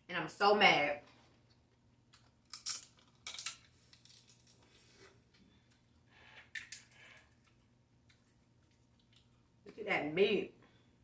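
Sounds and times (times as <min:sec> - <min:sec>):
crab shells cracking: 0:02.1 - 0:04.6, 0:06.4 - 0:08.2.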